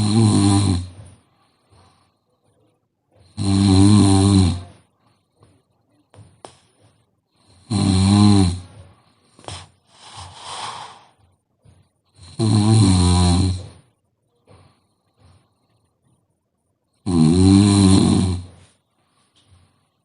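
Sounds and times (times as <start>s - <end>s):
woman snoring: 0.0s - 1.0s, 3.2s - 4.8s, 7.4s - 8.8s, 9.4s - 11.2s, 12.2s - 13.8s, 17.0s - 18.6s
soft breath out: 1.0s - 3.2s, 8.8s - 11.8s.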